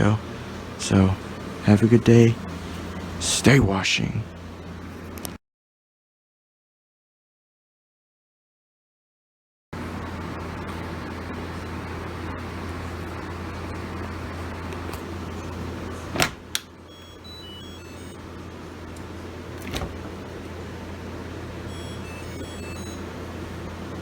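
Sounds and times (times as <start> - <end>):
low machine hum: 0.0 - 5.4, 9.8 - 24.0.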